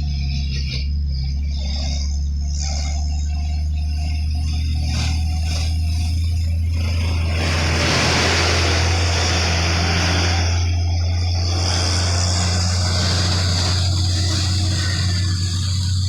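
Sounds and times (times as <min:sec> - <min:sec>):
diesel engine hum: 0:00.0 - 0:16.0
loud rushing of passing vehicle: 0:06.8 - 0:16.0.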